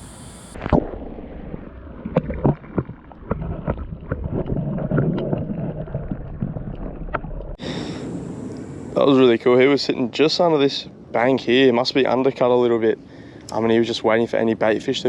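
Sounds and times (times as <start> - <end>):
muffled underwater sloshing: 0.0 - 7.6
water splash: 0.0 - 7.6.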